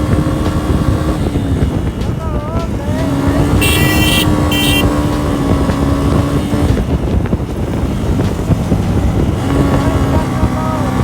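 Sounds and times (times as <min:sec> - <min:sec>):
wind rushing over microphone: 0:00.0 - 0:11.0
motorcycle engine running: 0:03.6 - 0:05.0.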